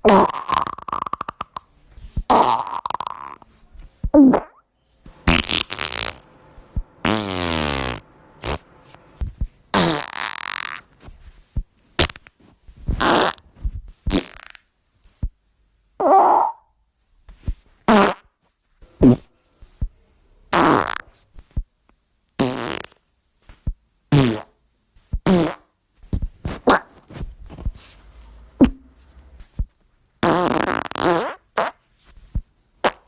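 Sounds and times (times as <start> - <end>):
buzzing raspy farts: 2.3 - 3.4, 5.2 - 6.3, 7.0 - 9.0, 9.7 - 10.9, 13.0 - 13.5, 17.9 - 18.3, 19.0 - 19.3, 20.5 - 21.1, 22.4 - 23.0, 26.5 - 27.0, 30.2 - 31.8.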